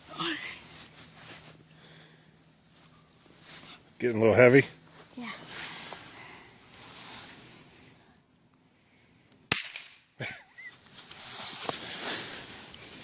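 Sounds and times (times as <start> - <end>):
suppressed gunshot: 9.5 - 10.0.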